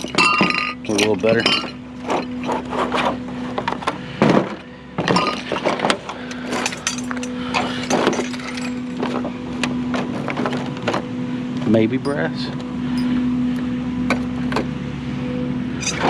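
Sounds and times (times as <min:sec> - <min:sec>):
glass and metal clinking: 0:00.0 - 0:02.6, 0:05.1 - 0:05.6, 0:06.6 - 0:09.0, 0:15.8 - 0:16.0
low hum: 0:00.0 - 0:16.0.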